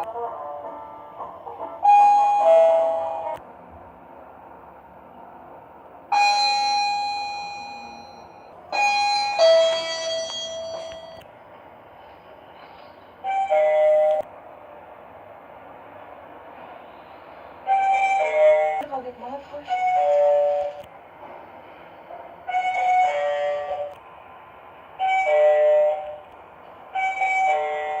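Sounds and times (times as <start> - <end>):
elevator chime: 1.8 - 3.4, 6.1 - 11.2.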